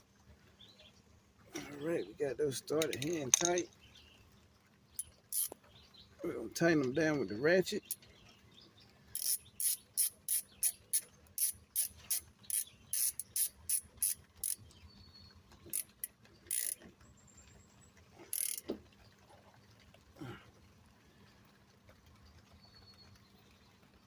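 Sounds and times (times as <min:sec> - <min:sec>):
ratchet rasps: 0:05.0 - 0:05.6, 0:09.1 - 0:14.8, 0:15.6 - 0:16.9, 0:18.2 - 0:18.8
hand ratchet clicking: 0:05.3 - 0:05.6, 0:09.2 - 0:14.6, 0:15.7 - 0:16.8, 0:18.3 - 0:18.7.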